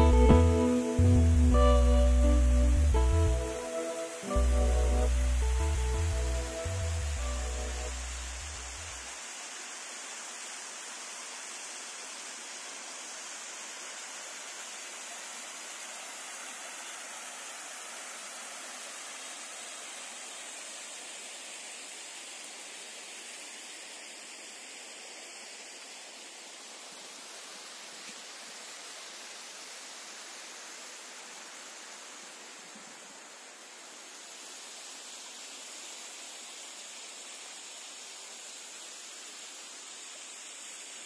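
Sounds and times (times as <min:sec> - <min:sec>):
music track: 0:00.0 - 0:09.0
falling water rushing: 0:00.0 - 0:41.0.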